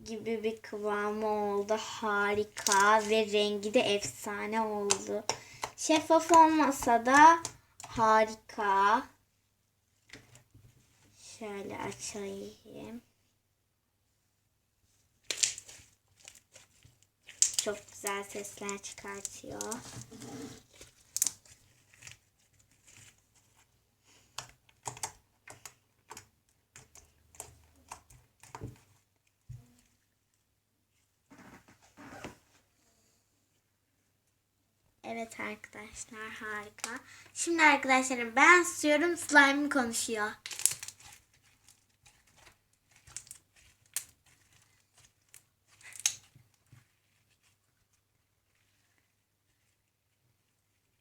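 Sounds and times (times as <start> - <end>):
slime squelching with wet pops: 2.2 - 8.1, 15.2 - 30.5, 40.4 - 50.1
slime popping: 17.3 - 20.0, 42.9 - 46.4.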